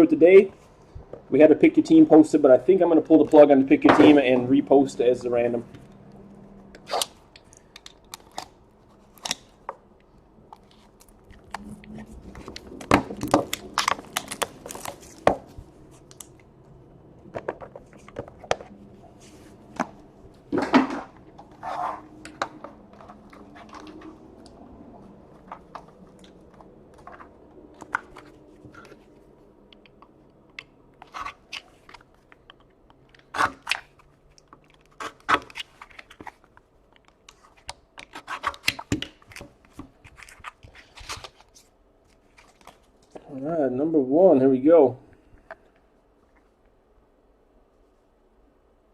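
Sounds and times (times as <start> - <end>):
card packaging tearing and crinkling: 10.7 - 16.2, 37.4 - 41.7.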